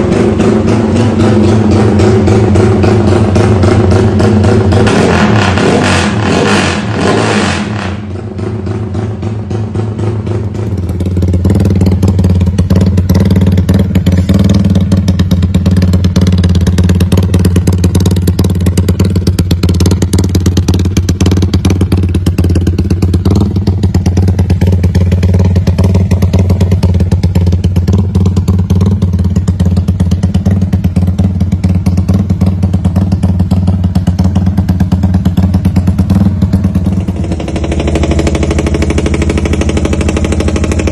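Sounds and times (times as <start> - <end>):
motorcycle engine rumbling idle: 0.0 - 5.4, 8.0 - 40.9.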